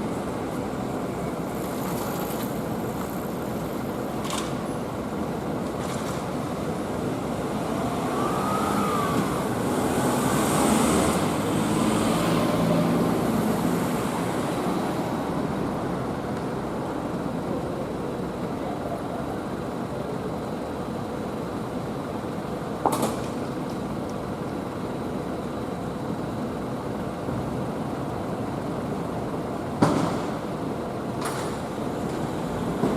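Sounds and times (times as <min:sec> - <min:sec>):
street traffic hum: 0:00.0 - 0:32.9
vehicle passing close by: 0:07.5 - 0:14.8.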